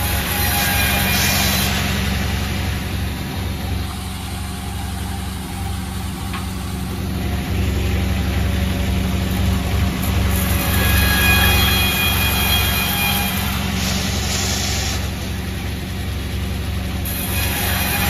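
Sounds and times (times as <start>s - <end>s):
sawmill machinery humming: 0.0s - 18.0s.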